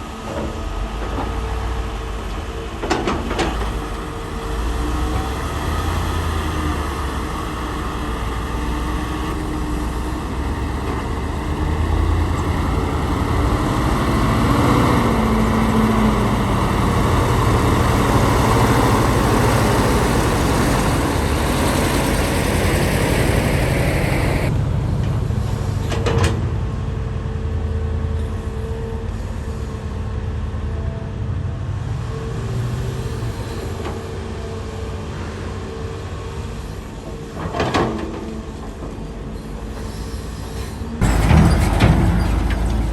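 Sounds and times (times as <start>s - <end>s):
excavator engine and hydraulics: 0.0s - 42.9s
thin steady whine: 19.2s - 24.5s.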